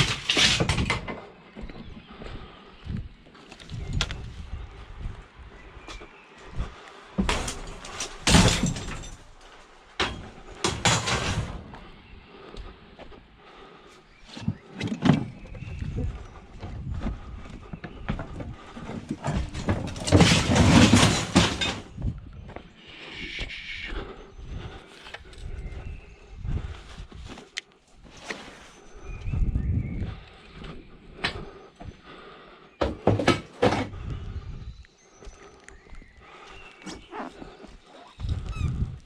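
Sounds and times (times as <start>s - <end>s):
hard objects knocking and clattering: 18.2s - 22.0s, 32.8s - 33.9s.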